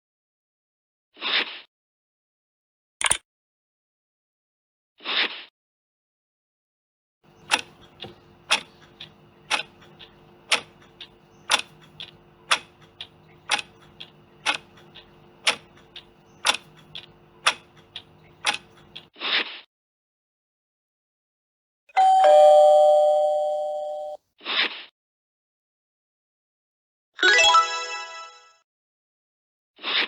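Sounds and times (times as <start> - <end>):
clock ticking: 7.3 - 19.1
faint steady hum: 7.3 - 19.1.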